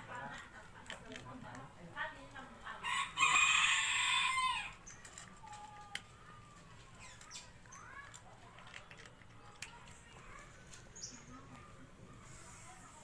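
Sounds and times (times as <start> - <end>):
rooster crowing: 2.8 - 4.8.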